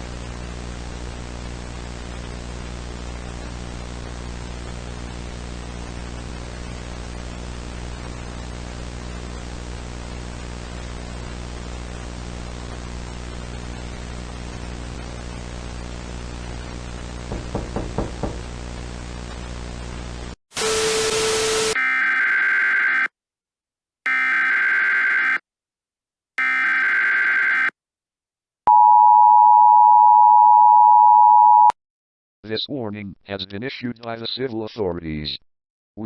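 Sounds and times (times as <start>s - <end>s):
static hiss: 19.9s - 21.8s
harsh burst of noise: 20.6s - 21.8s
two-tone attention signal: 28.7s - 31.7s.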